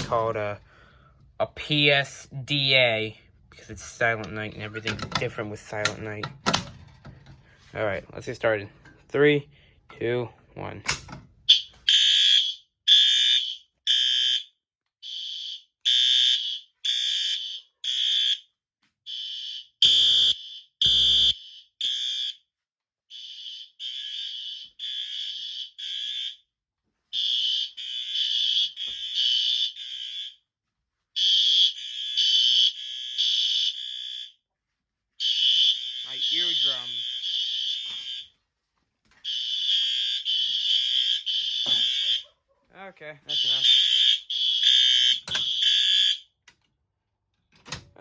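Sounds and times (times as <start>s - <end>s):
fire alarm horn blasts: 11.5s - 18.4s, 19.1s - 22.4s, 23.1s - 26.4s, 27.1s - 30.4s, 31.2s - 34.4s, 35.2s - 38.3s, 39.2s - 42.2s, 43.3s - 46.2s.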